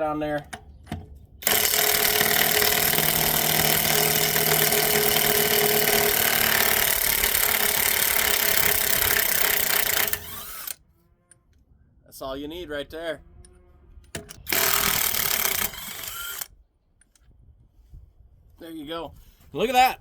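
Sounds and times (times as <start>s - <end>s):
impact wrench hammering: 1.4s - 10.8s, 14.4s - 16.4s.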